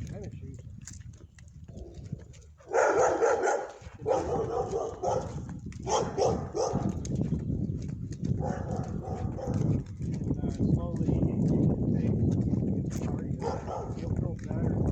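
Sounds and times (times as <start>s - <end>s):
dog barking: 2.6s - 7.0s, 8.4s - 9.8s, 13.4s - 14.0s.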